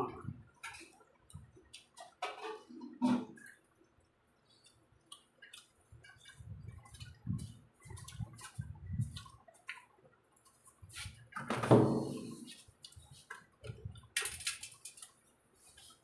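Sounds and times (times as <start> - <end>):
people chewing: 3.4 - 11.2.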